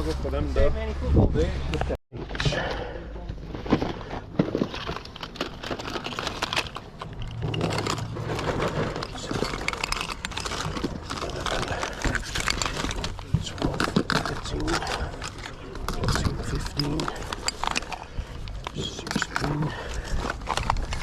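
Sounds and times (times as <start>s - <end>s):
rustling and crinkling: 2.2s - 21.0s
small irregular clicks and knocks: 4.4s - 21.0s.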